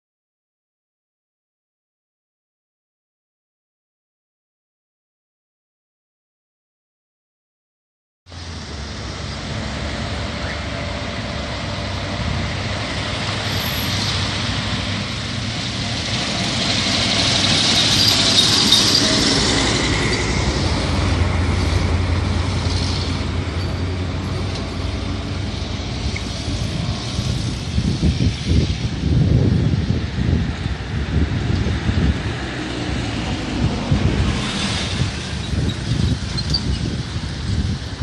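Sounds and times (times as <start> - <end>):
vehicle passing: 8.3 - 29.4, 30.0 - 36.2.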